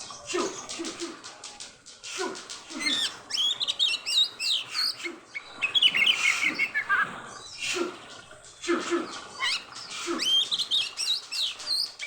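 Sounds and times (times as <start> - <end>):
bird singing whistled notes: 3.3 - 7.0, 9.4 - 12.0.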